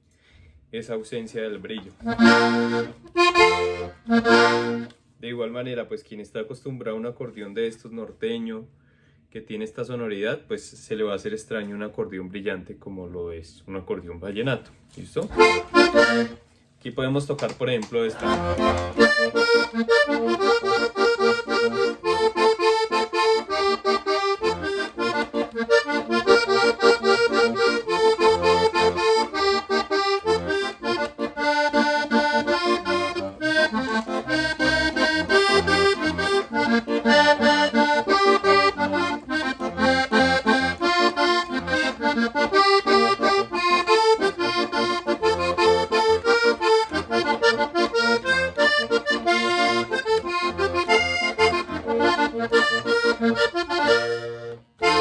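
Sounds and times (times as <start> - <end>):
accordion melody: 2.0 - 5.1, 15.3 - 16.5, 18.1 - 55.0
bass and chord accompaniment: 2.1 - 4.9, 18.2 - 55.0.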